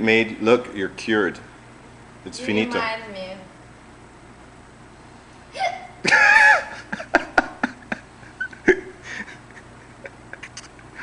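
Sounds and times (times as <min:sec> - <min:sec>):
person laughing: 0:06.0 - 0:11.0.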